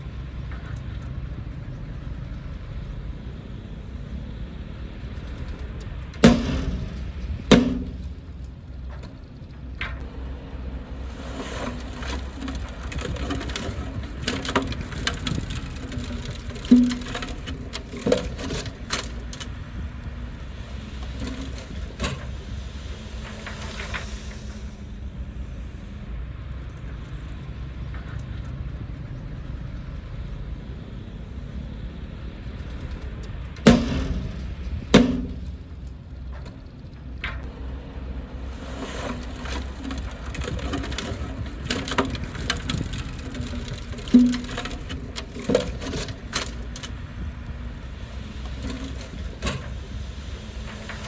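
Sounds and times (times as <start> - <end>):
heavy machine engine rumbling: 0.0 - 51.0
wood cracking and snapping: 6.2 - 8.2, 11.4 - 19.6, 21.0 - 22.3, 38.9 - 47.0, 48.4 - 49.7.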